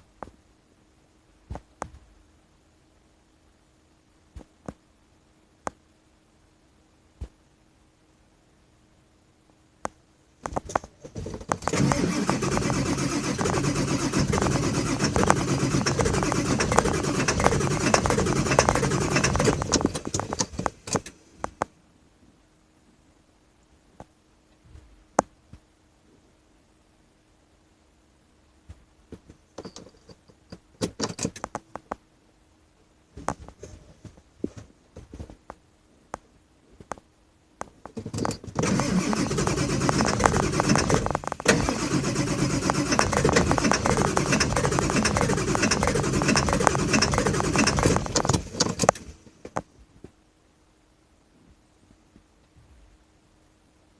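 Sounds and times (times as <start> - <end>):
scattered clicks: 10.5 - 21.7, 37.9 - 49.6
diesel engine turning over: 11.6 - 21.1, 38.5 - 49.2.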